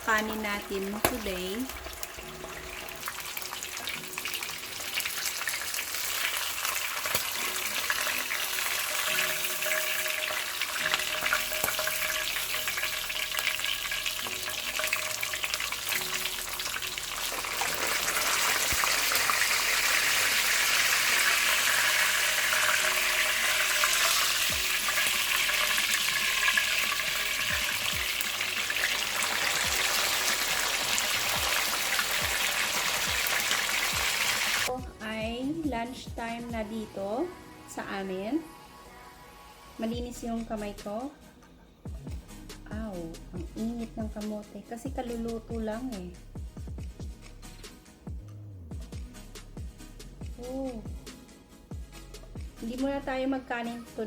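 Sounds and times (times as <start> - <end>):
fish sizzling in hot oil: 0.0 - 34.7.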